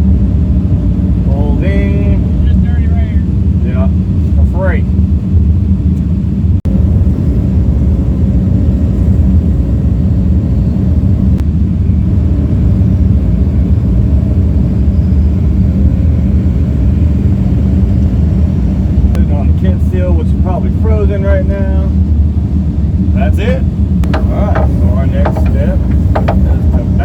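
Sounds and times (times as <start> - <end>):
excavator diesel engine droning: 23.8 - 27.0.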